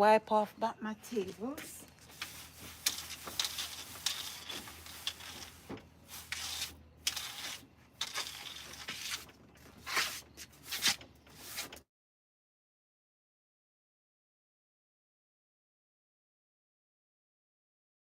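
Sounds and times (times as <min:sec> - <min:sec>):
cloth wiping a table: 0:02.1 - 0:06.7.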